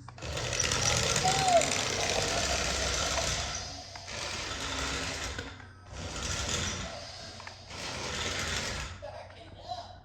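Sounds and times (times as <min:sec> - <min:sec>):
toy electric motor whirring: 0:00.0 - 0:09.0.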